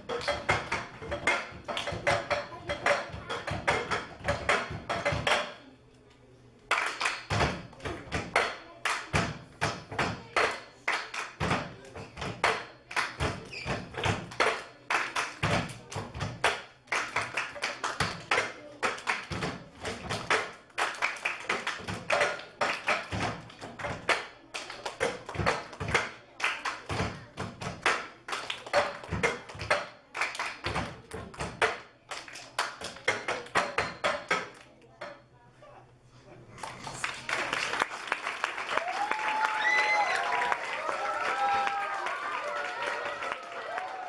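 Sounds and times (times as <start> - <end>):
cups tapped on a tabletop: 0.1 - 5.6, 32.9 - 35.2.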